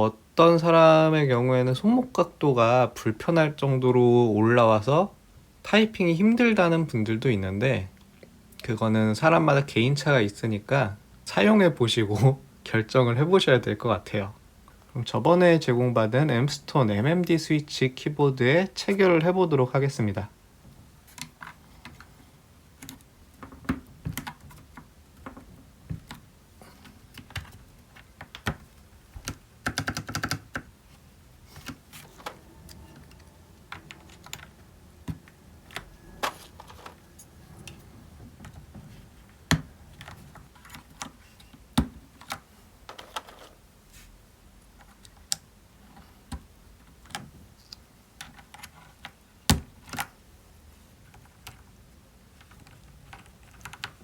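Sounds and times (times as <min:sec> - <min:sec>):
plastic clattering: 0:31.5 - 0:43.6.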